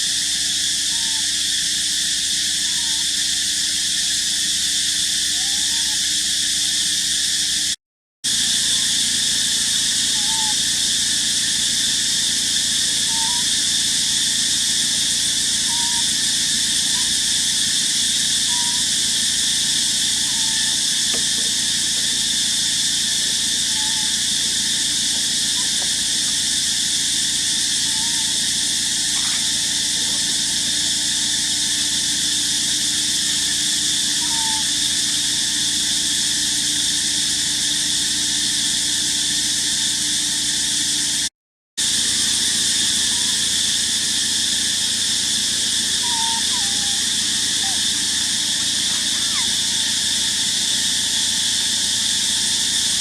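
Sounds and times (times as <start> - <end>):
high-pitched insect chorus: 0.0 - 53.0.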